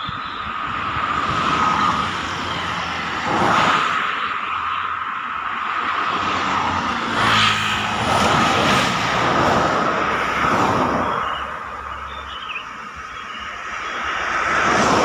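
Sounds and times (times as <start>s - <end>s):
road traffic passing: 0.0s - 15.0s
heavy vehicle passing: 6.1s - 11.8s.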